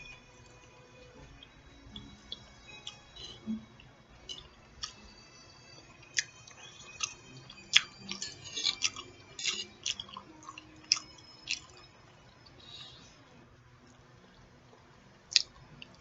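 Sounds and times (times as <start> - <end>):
person chewing food: 1.0 - 5.0, 6.0 - 11.9.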